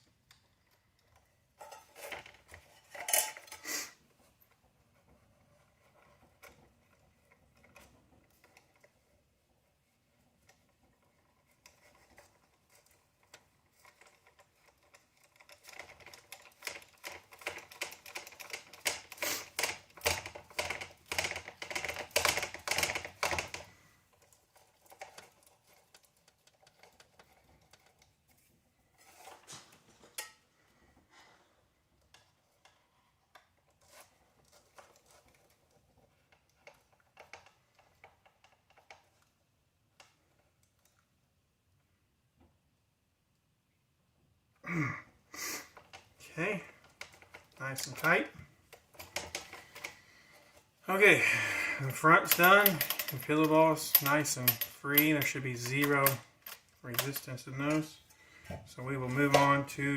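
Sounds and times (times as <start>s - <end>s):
hand tool and metal parts clicking: 1.6s - 3.8s, 45.8s - 50.6s, 51.4s - 59.9s.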